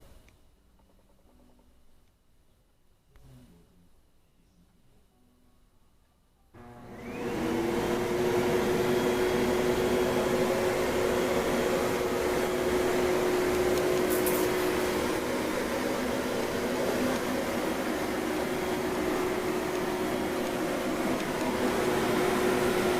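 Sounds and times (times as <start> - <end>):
vacuum cleaner motor running: 6.6 - 22.9.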